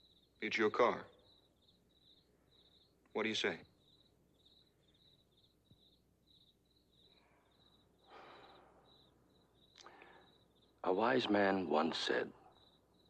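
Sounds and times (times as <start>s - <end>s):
crickets chirping: 0.0s - 13.0s
soft breathy noise: 7.1s - 9.2s, 9.8s - 10.6s.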